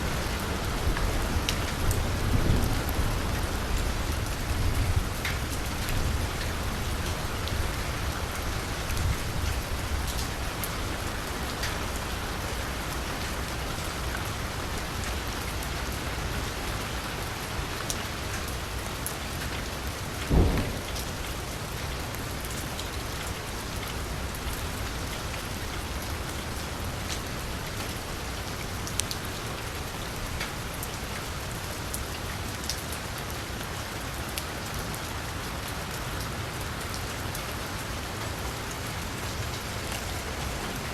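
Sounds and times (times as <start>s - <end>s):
raindrops ticking close by: 0.0s - 40.9s
steady rain on a street: 0.0s - 40.9s
dull thump: 20.3s - 20.9s.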